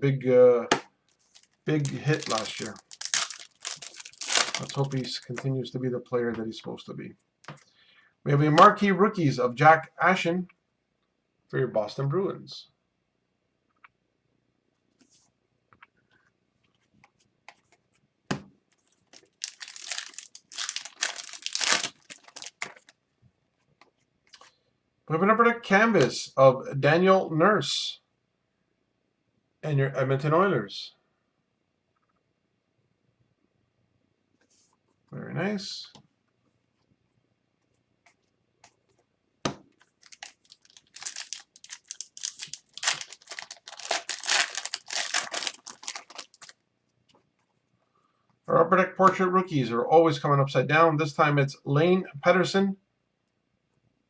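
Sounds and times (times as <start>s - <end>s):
wrapper crinkling and tearing: 1.2s - 5.4s, 19.1s - 22.9s, 40.0s - 46.6s.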